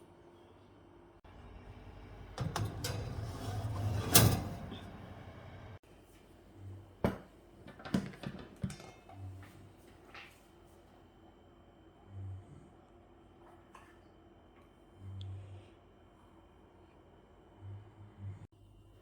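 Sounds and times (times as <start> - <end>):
kitchen rustling and clattering: 2.1 - 5.8, 7.1 - 10.5.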